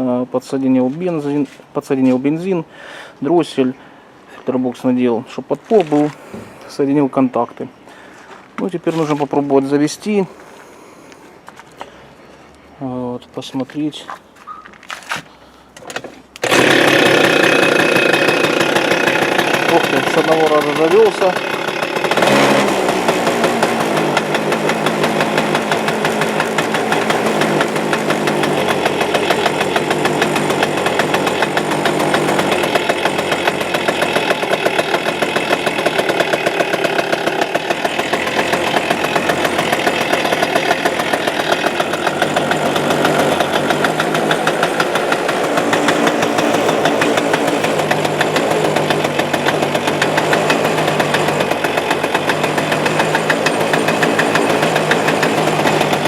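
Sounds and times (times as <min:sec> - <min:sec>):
scooter engine idling: 0:16.4 - 0:56.0.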